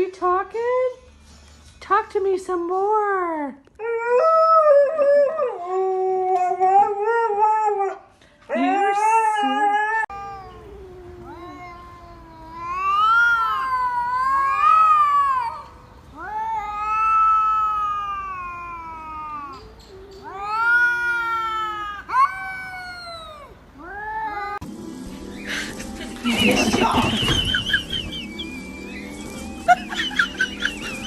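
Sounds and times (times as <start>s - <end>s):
cat yowling: 8.6s - 24.6s.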